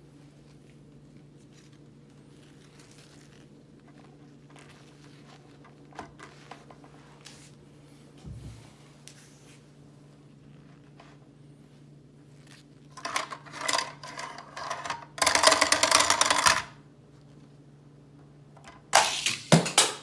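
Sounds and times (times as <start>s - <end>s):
steady low hum: 6.9s - 13.0s
handling scrapes and clicks: 12.4s - 16.7s.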